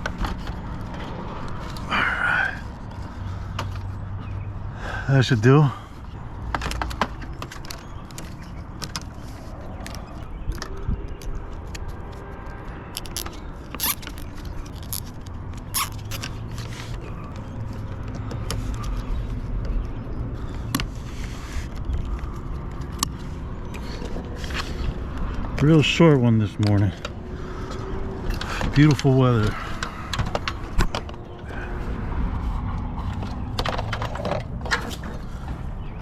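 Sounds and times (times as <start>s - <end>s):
small hard objects clinking: 13.0s - 15.0s.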